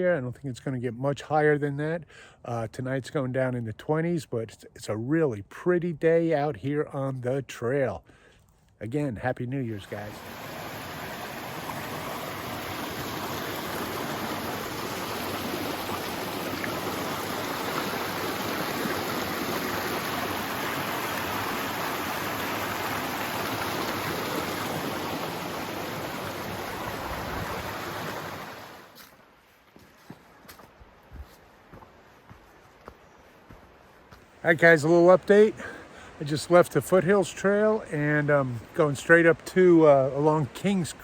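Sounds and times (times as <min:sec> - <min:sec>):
creek water rushing: 0:09.7 - 0:29.2, 0:30.0 - 0:41.0.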